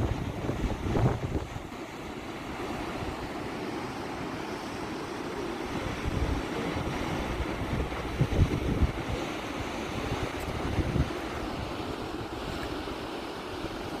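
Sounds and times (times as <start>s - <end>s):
wind buffeting microphone: 0.0s - 1.8s, 5.7s - 12.9s
ocean surf: 0.0s - 14.0s.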